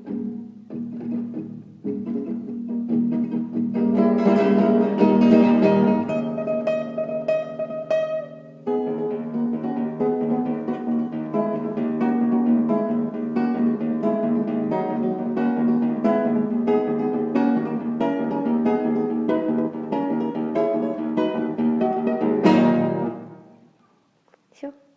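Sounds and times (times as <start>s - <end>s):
acoustic guitar fingerpicking: 0.0s - 23.9s
strummed guitar chord: 3.8s - 23.6s.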